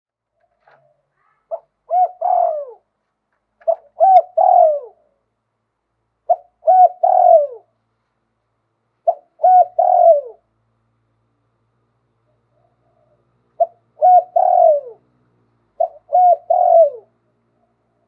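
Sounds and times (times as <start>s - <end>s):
dove cooing: 0.4s - 2.9s, 3.6s - 5.2s, 6.3s - 7.7s, 9.0s - 10.5s, 12.3s - 15.1s, 15.7s - 18.0s.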